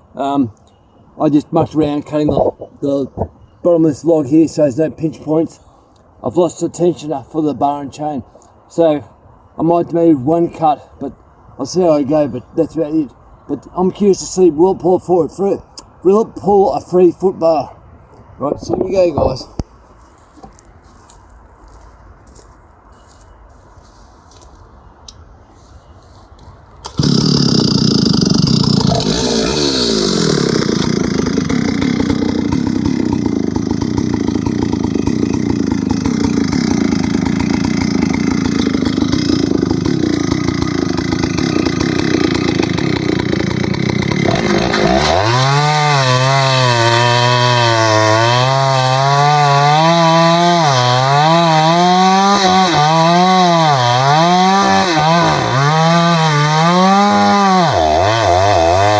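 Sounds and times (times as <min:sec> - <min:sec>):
chainsaw cutting log: 0:26.8 - 0:58.9.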